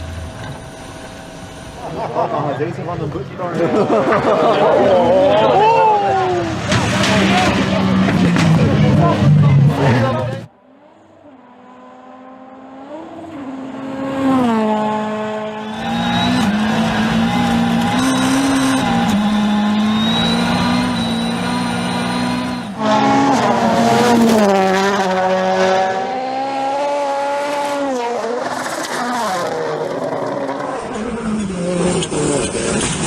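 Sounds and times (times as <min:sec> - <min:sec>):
rushing noise: 0:05.8 - 0:10.1
rally car engine at high revs: 0:06.2 - 0:33.0.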